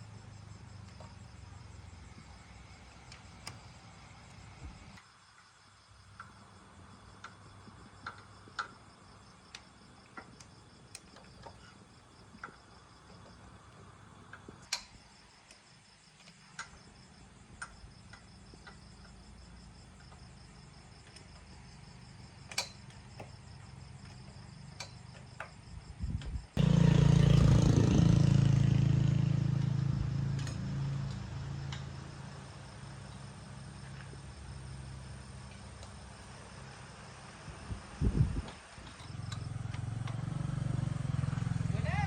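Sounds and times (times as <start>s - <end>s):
crickets chirping: 0.0s - 42.0s
small engine running: 26.6s - 42.0s.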